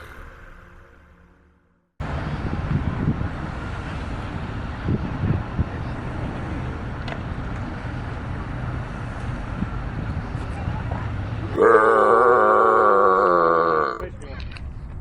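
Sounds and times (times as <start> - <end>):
wind on microphone: 2.0 - 6.9
steady traffic noise: 2.0 - 15.0.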